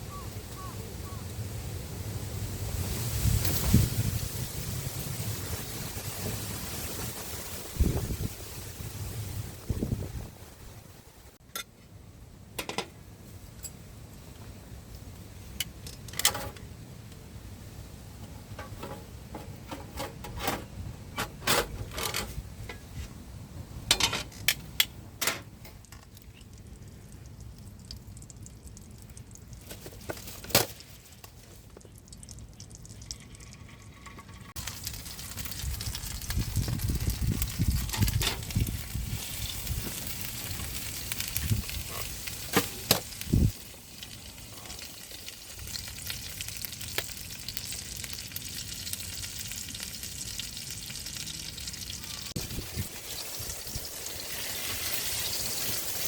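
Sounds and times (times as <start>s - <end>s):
food sizzling in hot pan: 2.7s - 9.6s, 34.5s - 56.0s.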